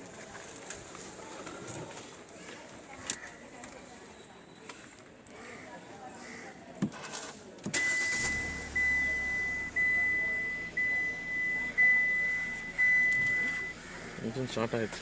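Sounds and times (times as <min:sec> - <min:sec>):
car dashboard warning chime: 0:07.8 - 0:13.8.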